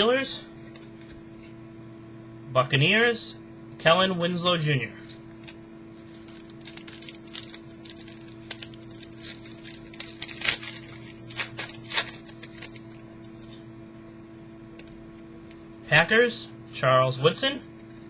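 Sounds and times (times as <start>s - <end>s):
steady low hum: 0.0s - 18.0s
trading cards clicking and rustling: 5.4s - 13.4s.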